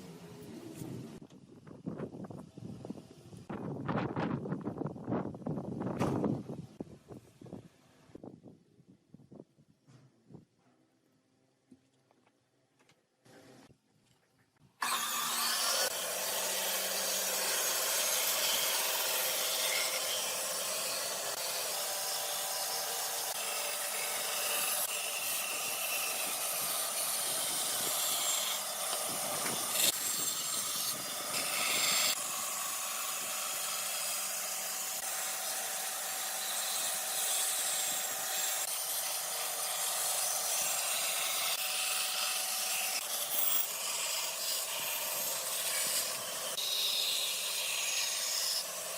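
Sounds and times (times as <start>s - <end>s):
power tool sanding wood: 14.8s - 48.9s.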